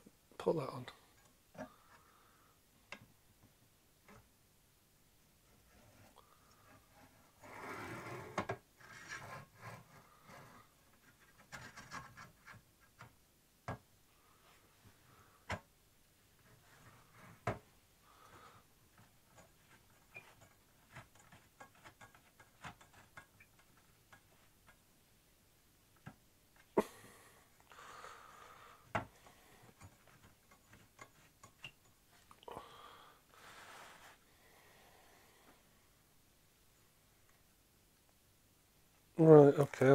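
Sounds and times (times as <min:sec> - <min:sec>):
parts rubbing and sliding: 0:05.5 - 0:12.6, 0:33.4 - 0:34.2.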